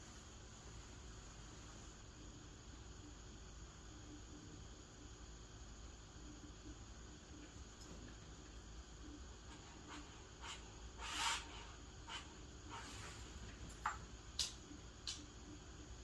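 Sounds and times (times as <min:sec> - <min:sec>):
small sharp clicks: 0:13.8 - 0:15.3.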